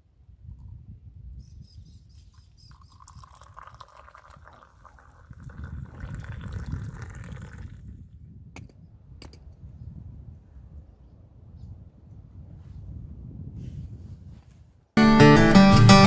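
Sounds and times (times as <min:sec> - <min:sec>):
liquid pouring: 0:02.6 - 0:07.9.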